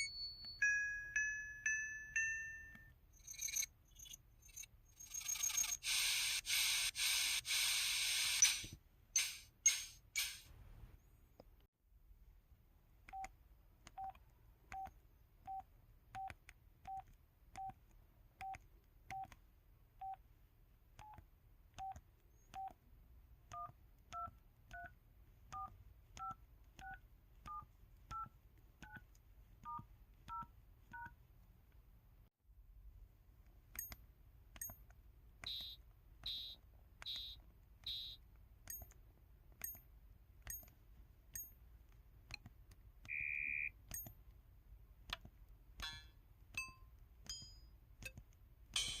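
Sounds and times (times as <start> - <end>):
percussive button sounds: 8.4 - 10.4, 45.1 - 49.0
phone keypad beeps: 23.5 - 24.9, 25.6 - 29.0, 35.4 - 39.0, 43.0 - 44.2.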